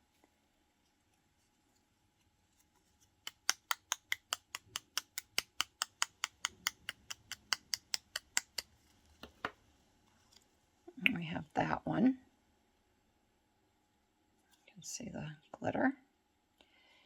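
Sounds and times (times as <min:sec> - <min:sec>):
rapid sharp clicks: 0:03.3 - 0:08.7.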